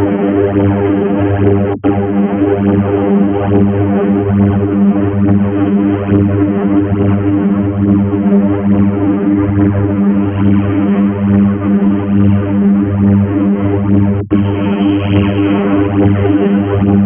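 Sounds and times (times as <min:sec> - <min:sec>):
buzzy electronic robot tone: 0:14.3 - 0:17.0.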